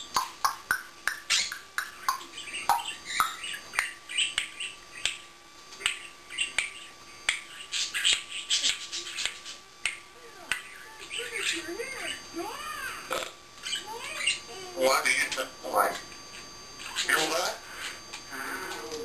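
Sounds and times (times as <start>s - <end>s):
parrot clicking and chirping: 0.0s - 11.6s.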